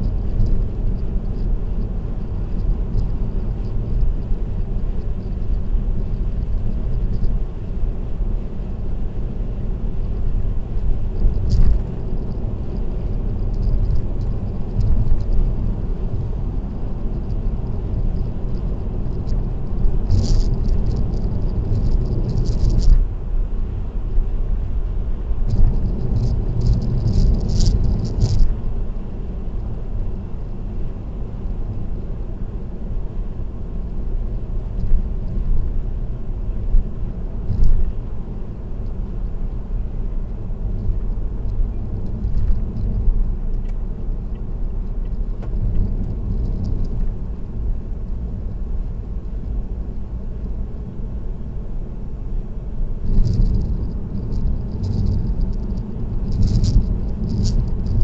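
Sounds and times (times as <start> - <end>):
road and tyre rumble: 0.0 - 58.0
light high-pitched rattling: 10.7 - 23.0, 25.5 - 28.5, 53.0 - 58.0.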